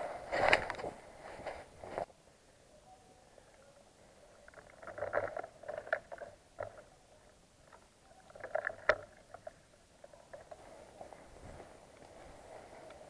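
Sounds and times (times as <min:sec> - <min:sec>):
rustling and crunching: 0:00.0 - 0:02.1, 0:04.4 - 0:06.9, 0:07.6 - 0:13.0.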